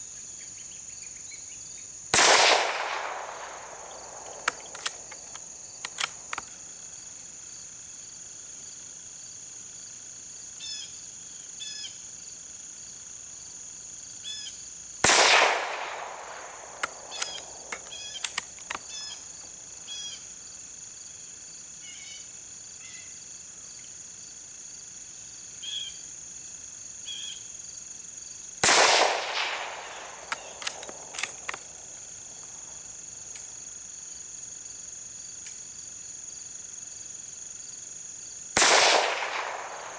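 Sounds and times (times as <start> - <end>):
rifle shot with echo: 2.2 - 6.4, 15.0 - 18.9, 28.6 - 32.0, 38.6 - 39.9
rifle bolt clicking: 4.0 - 6.5, 15.1 - 19.0, 28.6 - 32.0.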